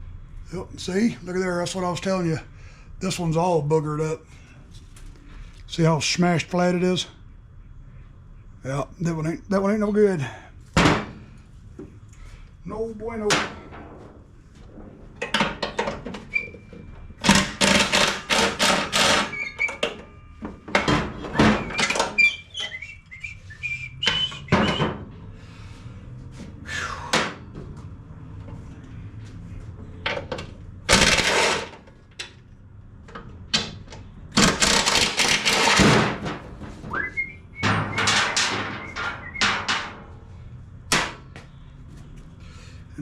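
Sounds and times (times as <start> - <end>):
metal tools clanking: 37.1 - 40.0.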